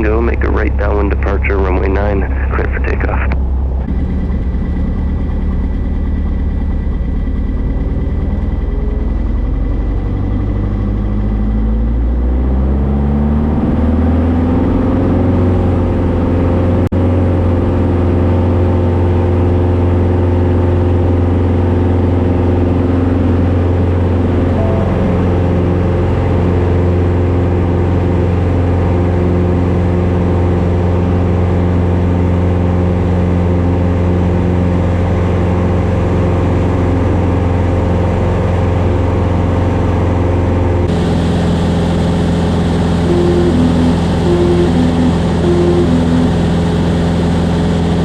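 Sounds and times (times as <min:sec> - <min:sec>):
aircraft piston engine and propeller: 0:00.0 - 0:12.4, 0:13.9 - 0:48.0
two-note electronic beep: 0:24.2 - 0:27.7, 0:43.0 - 0:46.8.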